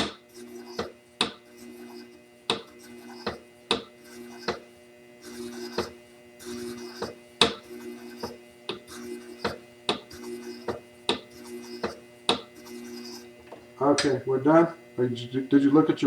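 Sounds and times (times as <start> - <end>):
blade rubbing on leather pad: 0.0 - 13.4
honing machine humming: 2.4 - 16.0.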